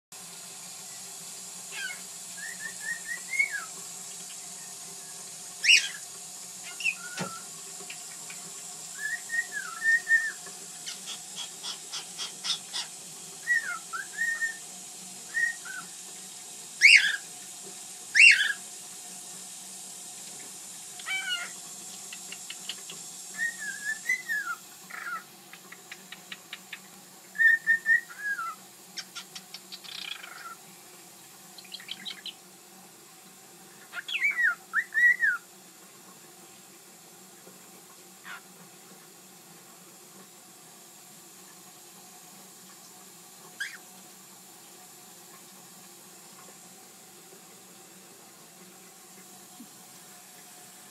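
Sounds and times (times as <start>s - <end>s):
cockatiel whistling: 1.8s - 3.7s, 5.6s - 6.0s, 6.7s - 7.4s, 9.0s - 10.4s, 13.4s - 14.6s, 15.3s - 15.9s, 16.8s - 17.2s, 18.1s - 18.6s, 23.4s - 25.2s, 27.4s - 28.6s, 34.0s - 35.4s.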